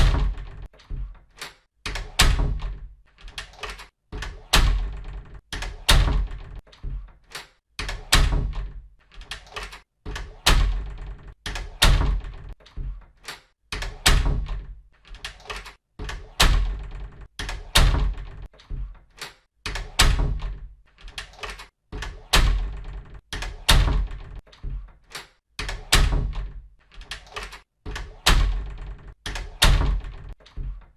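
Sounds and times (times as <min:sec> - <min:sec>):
door shutting with thunk: 0:00.0 - 0:01.2, 0:01.9 - 0:19.0, 0:19.7 - 0:20.6, 0:25.6 - 0:30.9.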